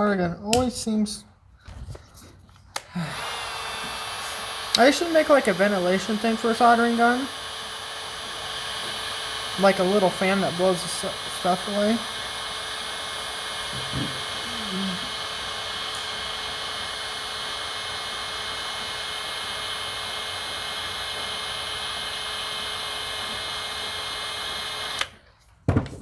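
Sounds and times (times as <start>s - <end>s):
small electric tool whining: 1.7s - 25.6s.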